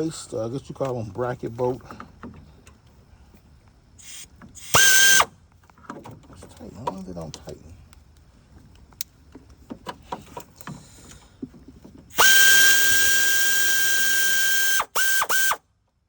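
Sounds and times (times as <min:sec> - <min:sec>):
air ratchet whining: 0:04.0 - 0:05.3, 0:12.1 - 0:15.6
light clicks and knocks: 0:05.6 - 0:12.1.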